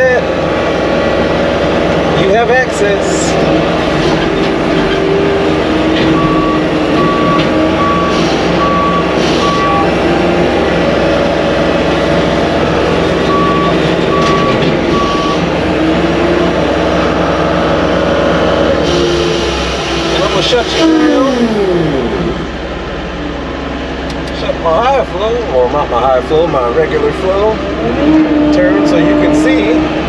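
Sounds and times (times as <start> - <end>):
skid steer engine running: 0.0 - 30.0
reverse alarm beeps: 6.1 - 9.9, 13.3 - 15.4.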